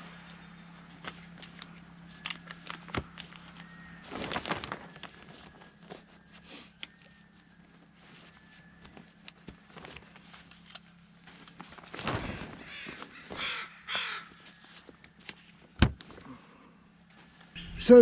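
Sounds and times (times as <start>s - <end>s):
bird harsh calls: 12.2s - 14.6s.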